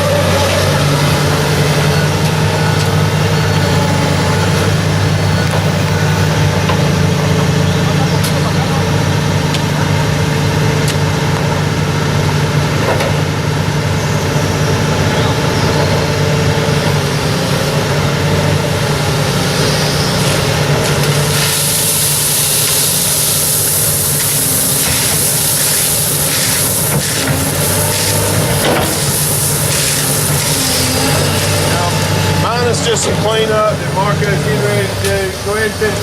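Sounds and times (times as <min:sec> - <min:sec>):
truck engine running: 0:00.0 - 0:36.0
loud hissing: 0:13.6 - 0:36.0.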